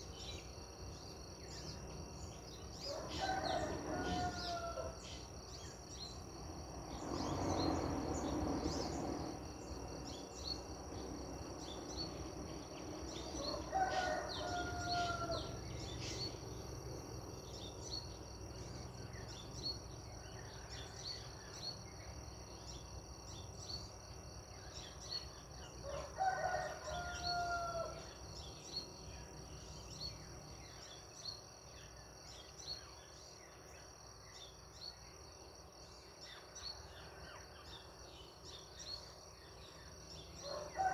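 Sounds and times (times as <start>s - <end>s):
high insect drone: 0.0s - 40.9s
rooster crowing: 2.8s - 5.0s, 13.4s - 15.9s, 25.8s - 28.1s, 40.4s - 40.9s.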